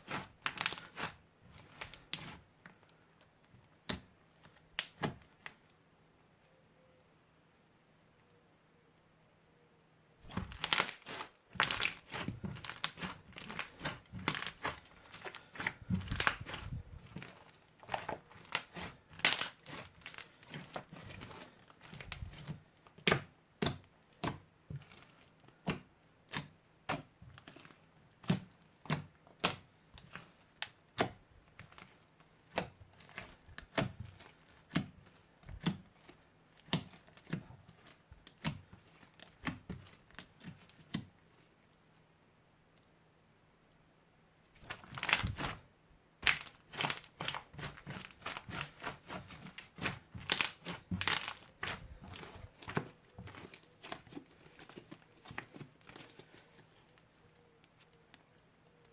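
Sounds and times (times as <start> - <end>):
crunchy slime crackling pops: 10.3 - 41.1, 44.6 - 45.6, 46.2 - 56.4.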